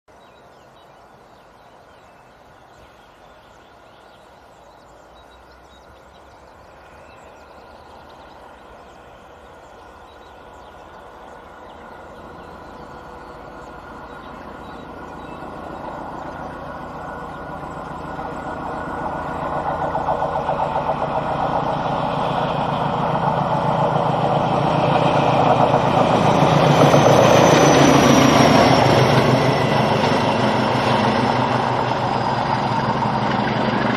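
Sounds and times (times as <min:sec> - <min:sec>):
diesel locomotive engine growl: 0:03.0 - 0:33.9.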